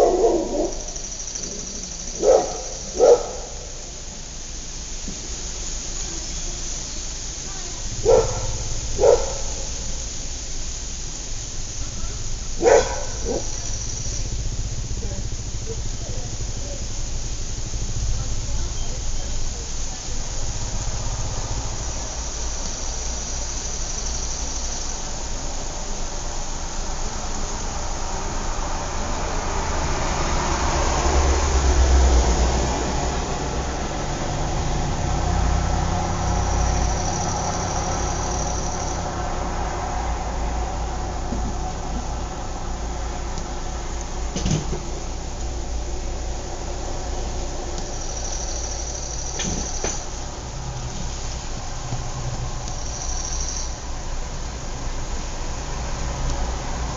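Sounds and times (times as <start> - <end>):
dog barking: 0.0 - 3.9, 8.0 - 10.1, 11.9 - 13.8
low background rumble: 0.0 - 56.9.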